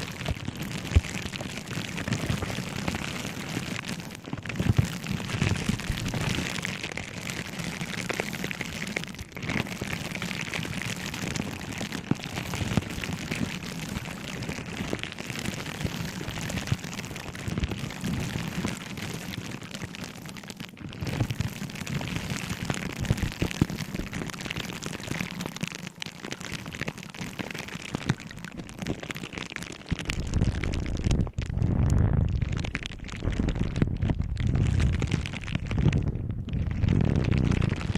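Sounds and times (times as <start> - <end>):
low rumble: 30.3 - 37.9.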